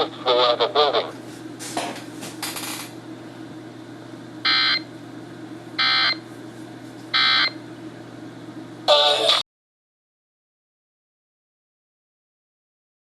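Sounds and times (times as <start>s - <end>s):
steady low hum: 0.0s - 9.4s.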